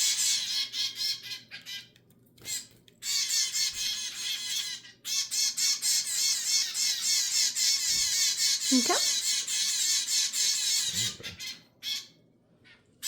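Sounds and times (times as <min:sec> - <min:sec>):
finch chicks begging calls: 0:03.0 - 0:12.1.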